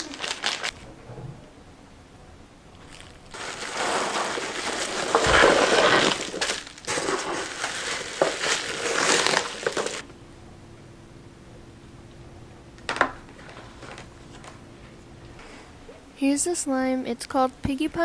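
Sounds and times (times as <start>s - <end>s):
plastic packaging crinkling: 0.0s - 0.8s, 2.8s - 10.0s.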